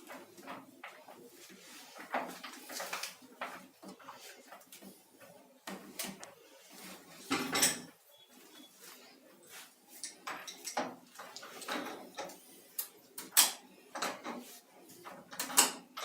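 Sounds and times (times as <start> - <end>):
tools clattering: 9.9 - 12.4
metal pipe fittings clinking: 9.9 - 14.5.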